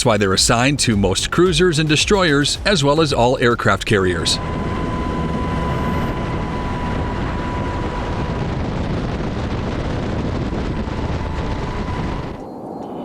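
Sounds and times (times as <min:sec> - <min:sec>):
high whine: 0:00.0 - 0:13.0
rushing wind: 0:00.0 - 0:13.0
heavy machine noise: 0:02.7 - 0:12.4.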